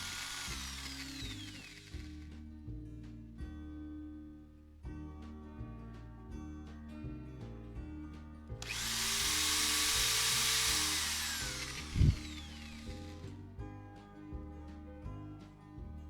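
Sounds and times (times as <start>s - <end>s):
electric drill boring into wood: 0.0s - 2.2s, 8.6s - 13.2s.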